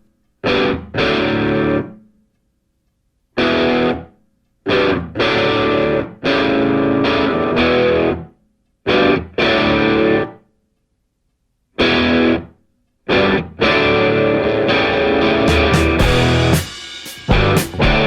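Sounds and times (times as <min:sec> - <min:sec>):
distorted electric guitar chords: 0:00.4 - 0:01.9, 0:03.4 - 0:04.1, 0:04.7 - 0:08.3, 0:08.9 - 0:10.4, 0:11.8 - 0:12.5, 0:13.1 - 0:18.0.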